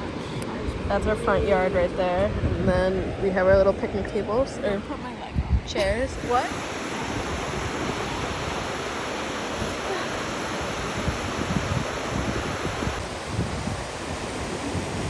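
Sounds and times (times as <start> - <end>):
wind gusting on microphone: 0.0 - 15.0
ocean surf breaking: 5.9 - 15.0.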